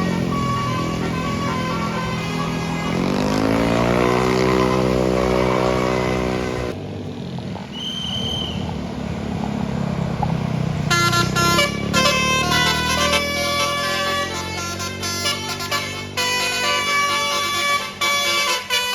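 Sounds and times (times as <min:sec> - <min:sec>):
multi-note bus horn tune: 0:00.0 - 0:06.8, 0:10.8 - 0:18.9
bus engine revving: 0:00.0 - 0:18.9.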